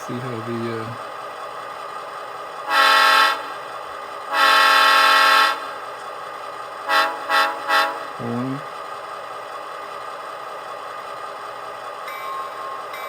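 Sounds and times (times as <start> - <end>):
model train horn blasts: 2.7 - 3.6, 4.3 - 5.8, 6.8 - 8.2.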